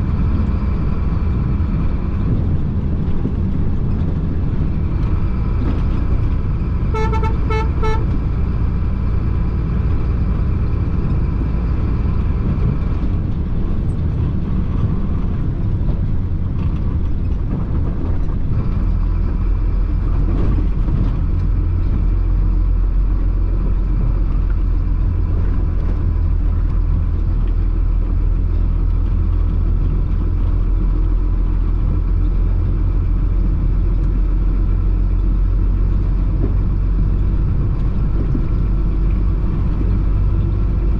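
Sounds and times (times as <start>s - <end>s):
diesel truck engine running: 0.0s - 40.9s
horn short toots: 6.9s - 8.1s.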